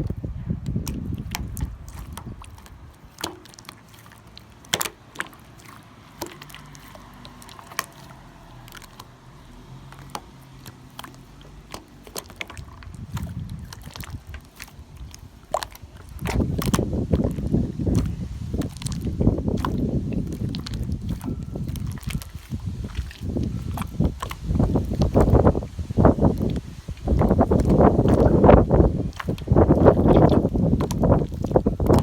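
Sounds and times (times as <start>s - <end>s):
wind rumbling on microphone: 0.0s - 3.3s, 6.4s - 32.0s
slime crackling and popping: 9.8s - 32.0s.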